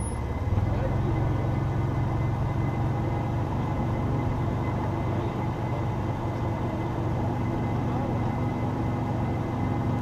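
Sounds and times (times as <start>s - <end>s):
car engine running at low revs: 0.0s - 10.0s.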